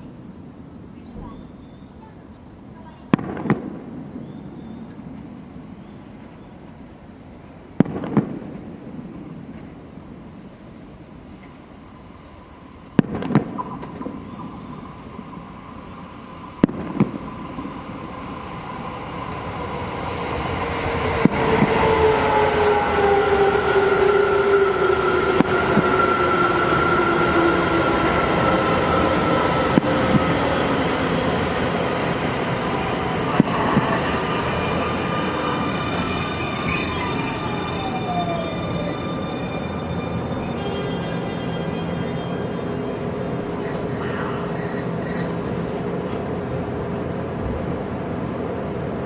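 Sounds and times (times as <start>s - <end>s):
electric train braking: 13.8s - 46.1s.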